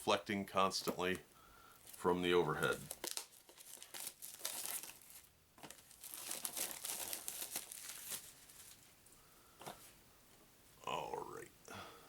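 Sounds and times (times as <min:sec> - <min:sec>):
shrink wrap tearing and crinkling: 0:01.8 - 0:08.9.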